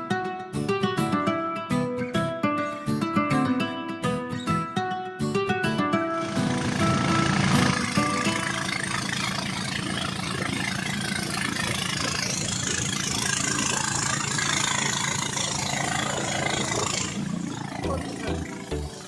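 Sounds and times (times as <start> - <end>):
engine running steadily: 6.0 - 19.0.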